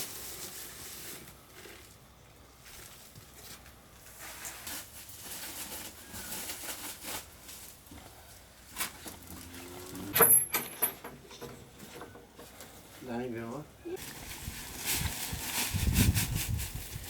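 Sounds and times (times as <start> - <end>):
rustling and handling knocks: 10.0 - 12.9.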